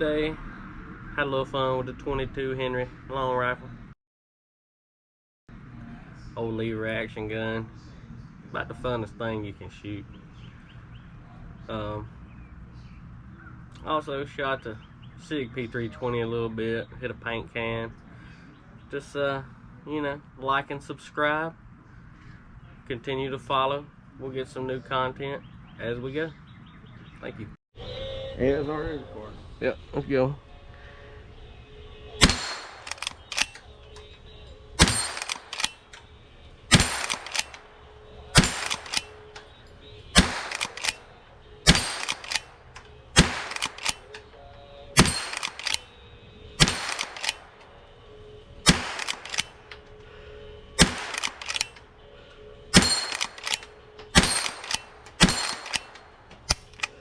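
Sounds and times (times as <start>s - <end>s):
rifle shots: 32.2s - 34.0s, 34.8s - 36.0s, 36.7s - 44.2s, 45.0s - 49.7s, 50.5s - 51.8s, 52.7s - 57.0s
soft rifle action clicks: 32.2s - 34.1s, 34.8s - 36.1s, 36.8s - 37.7s, 38.4s - 39.5s, 40.2s - 41.1s, 41.7s - 44.3s, 45.0s - 45.9s, 46.6s - 47.7s, 48.7s - 50.0s, 50.8s - 51.8s, 52.8s - 57.0s.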